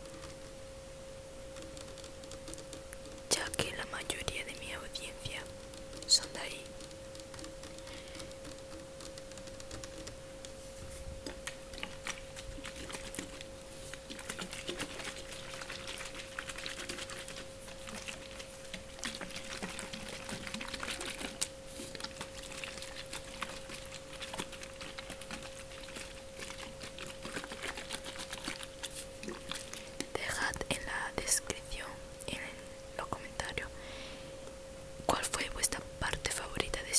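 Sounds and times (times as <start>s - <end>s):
faint steady hum: 0.0s - 36.9s.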